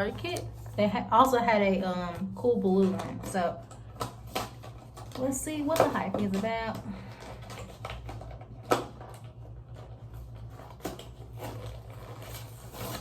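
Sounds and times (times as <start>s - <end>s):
low steady hum: 0.0s - 13.0s
cardboard box being torn open: 10.4s - 13.0s.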